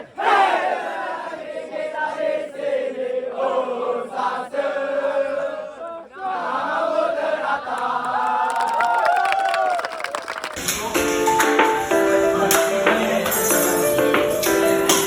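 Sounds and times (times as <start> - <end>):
voices chanting in unison: 0.0 - 8.6.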